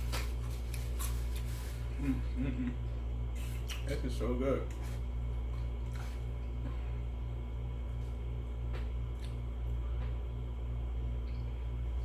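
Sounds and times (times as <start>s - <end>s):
low background hum: 0.0s - 12.0s
chewing and mouth sounds: 3.3s - 4.0s, 4.7s - 6.7s, 9.0s - 9.7s.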